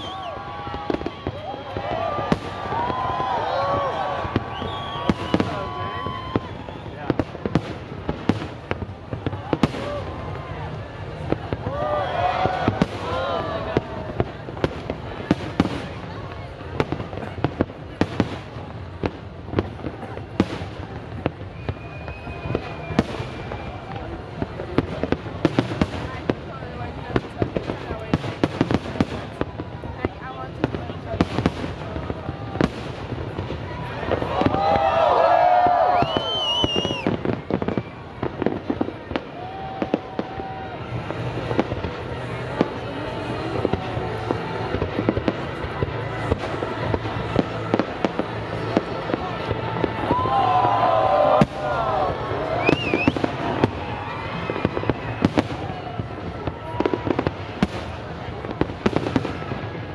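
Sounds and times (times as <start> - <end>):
thin steady whistle: 0.0 - 0.4, 4.4 - 7.0, 21.5 - 23.8, 36.0 - 37.1
continuous rumble: 0.0 - 59.9
fireworks bursting with sharp bangs: 0.0 - 59.9.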